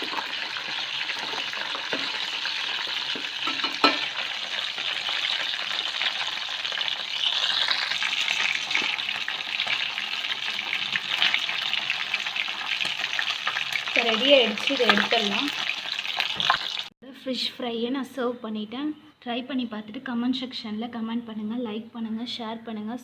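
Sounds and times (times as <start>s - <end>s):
fish frying in hot oil: 0.0s - 16.9s.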